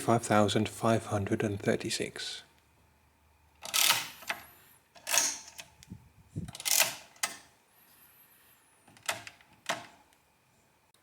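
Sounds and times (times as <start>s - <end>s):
calculator mechanism clicking: 3.6s - 7.5s.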